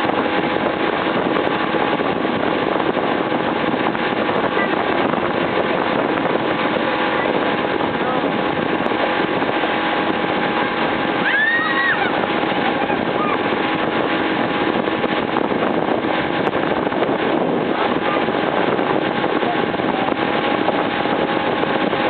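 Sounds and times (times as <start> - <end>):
hull rushing through water: 0.0 - 22.0
motorboat engine: 0.0 - 22.0
high-pitched voice: 13.1 - 13.4.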